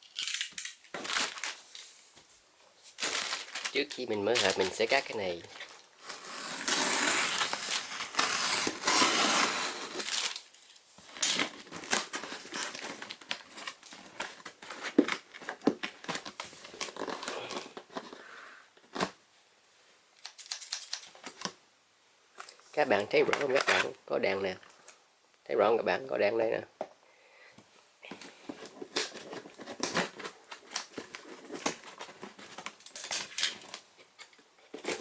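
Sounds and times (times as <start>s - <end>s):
packaging tearing and crinkling: 0.0s - 1.9s, 3.0s - 18.1s, 20.2s - 21.5s, 28.7s - 33.8s
wrapping crackling: 0.0s - 2.0s, 2.8s - 18.3s, 28.2s - 35.0s.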